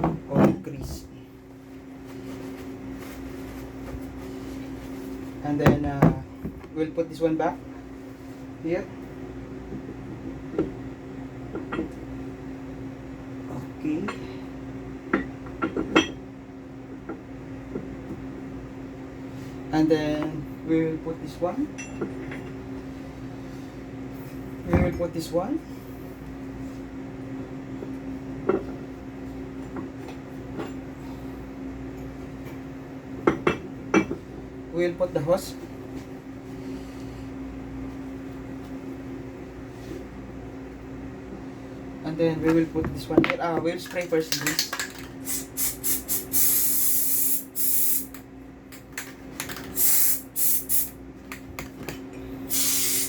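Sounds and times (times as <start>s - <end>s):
clicks and knocks of parts: 42.4s - 45.2s
spray hissing in bursts: 45.3s - 48.0s, 52.5s - 53.0s.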